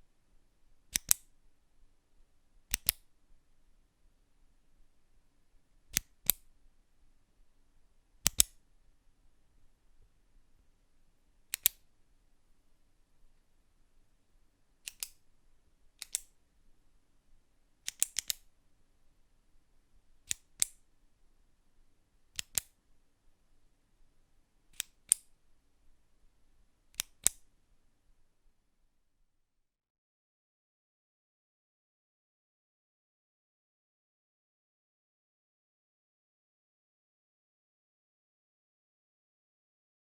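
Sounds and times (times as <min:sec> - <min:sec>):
pen button clicking: 0:00.9 - 0:01.2, 0:02.7 - 0:03.0, 0:06.0 - 0:06.4, 0:08.3 - 0:08.6, 0:11.6 - 0:11.8, 0:14.9 - 0:15.2, 0:16.0 - 0:16.3, 0:17.9 - 0:18.4, 0:20.3 - 0:20.8, 0:22.4 - 0:22.7, 0:27.0 - 0:27.4.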